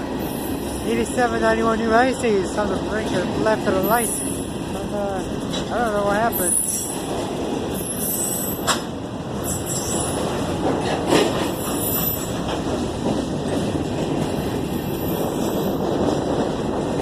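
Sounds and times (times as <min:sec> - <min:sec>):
train wheels rumbling on rail: 0:00.0 - 0:17.0.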